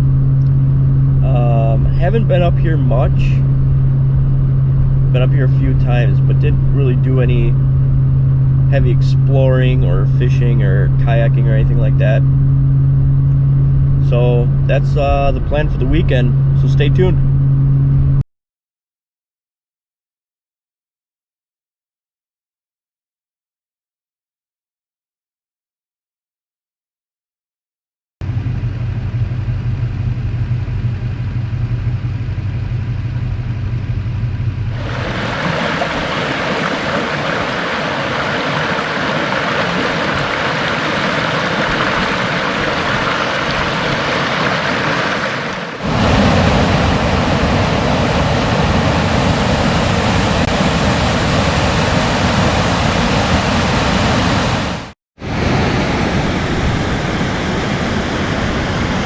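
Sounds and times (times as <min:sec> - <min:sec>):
waterfall rushing: 0:34.8 - 0:55.9.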